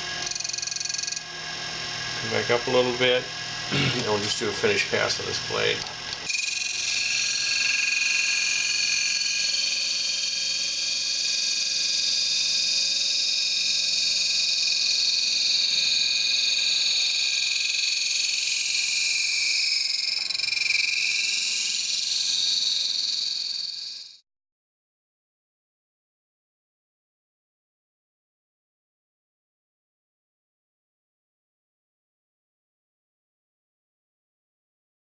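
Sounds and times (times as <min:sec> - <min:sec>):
high-pitched grinding hiss: 0:00.0 - 0:24.2.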